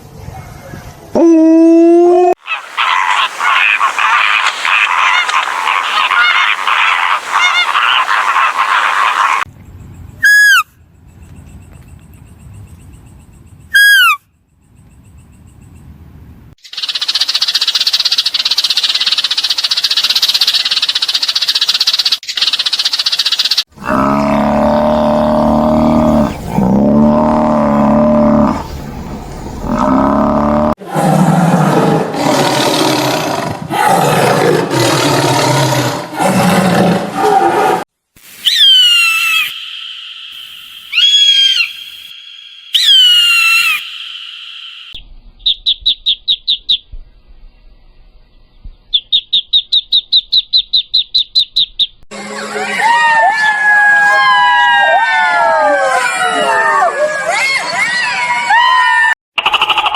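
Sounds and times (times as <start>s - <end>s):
loud animal calls: 2.3s - 9.5s, 23.8s - 28.7s, 38.5s - 45.0s
large animal roaring: 23.8s - 28.7s, 29.6s - 37.8s.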